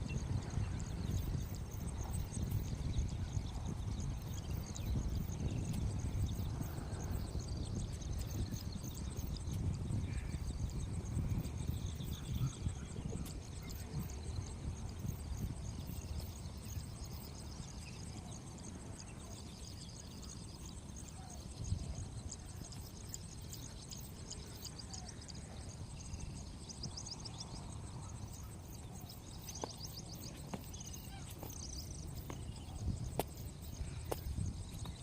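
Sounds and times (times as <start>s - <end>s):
faint high-pitched chirping: 0.0s - 35.0s.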